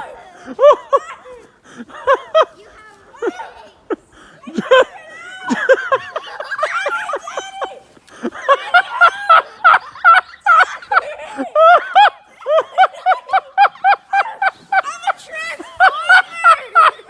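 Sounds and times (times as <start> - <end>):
people laughing: 0.0 - 17.0.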